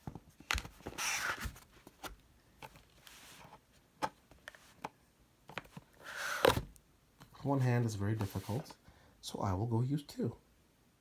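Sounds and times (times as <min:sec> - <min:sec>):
cardboard rubbing and scraping: 0:00.9 - 0:01.6, 0:06.0 - 0:06.7, 0:08.2 - 0:08.7.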